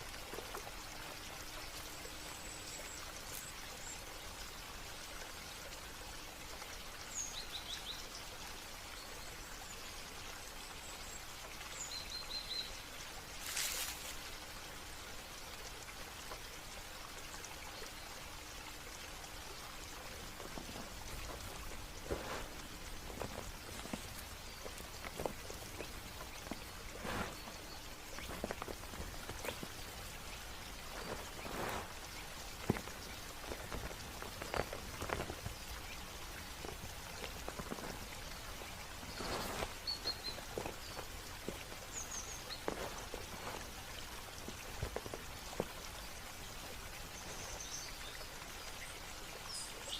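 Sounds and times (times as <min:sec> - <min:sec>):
water hissing: 0:19.5 - 0:45.6.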